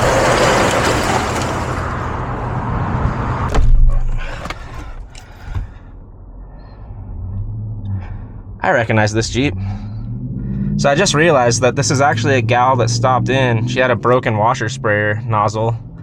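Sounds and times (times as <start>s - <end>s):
vehicle door shutting: 3.5s - 5.8s.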